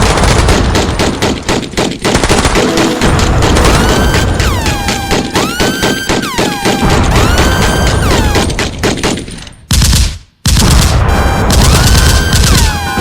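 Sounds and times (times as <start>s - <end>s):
gunfire-like crackle: 0.0s - 13.0s
siren-like tones: 3.0s - 8.6s, 11.0s - 13.0s.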